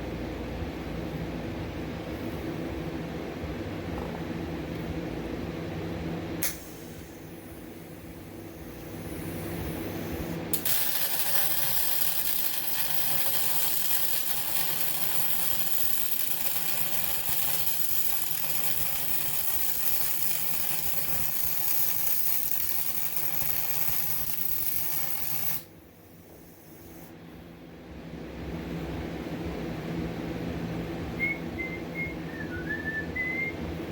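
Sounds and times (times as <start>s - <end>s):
low steady hum: 0.0s - 21.6s, 22.2s - 33.9s
welding arc crackling hiss: 6.4s - 27.1s.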